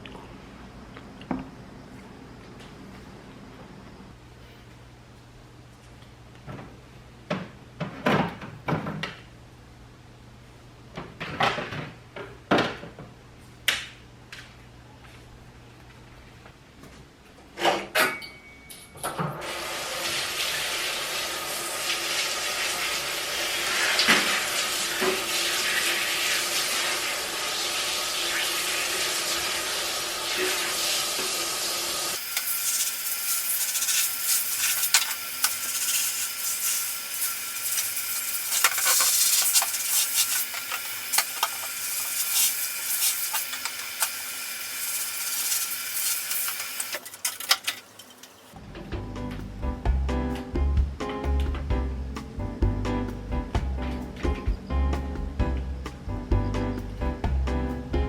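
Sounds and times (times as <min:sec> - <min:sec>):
food sizzling in a frying pan: 0:19.5 - 0:47.1
utensils scraping a pan: 0:32.4 - 0:43.8.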